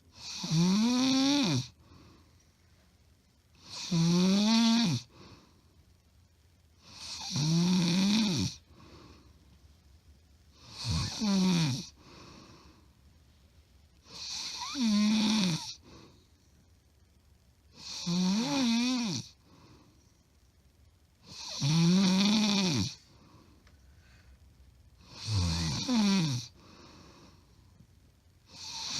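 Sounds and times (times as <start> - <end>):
woman snoring loudly: 0.1 - 1.8, 3.6 - 5.1, 6.8 - 8.6, 10.6 - 12.2, 14.1 - 15.8, 17.8 - 19.4, 21.3 - 23.0, 25.0 - 26.6, 28.5 - 28.9
faint breaths: 1.7 - 3.6, 5.0 - 7.2, 8.6 - 11.2, 11.8 - 14.8, 15.7 - 17.3, 19.3 - 20.7, 22.9 - 28.9.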